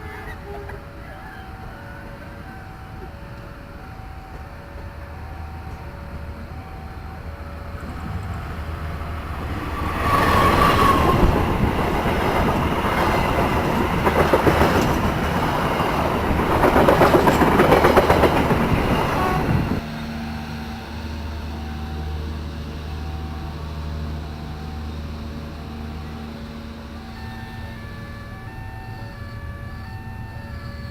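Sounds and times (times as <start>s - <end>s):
two-tone crossing warning alarm: 0.1s - 30.9s
train wheels clattering over rails: 4.2s - 19.9s.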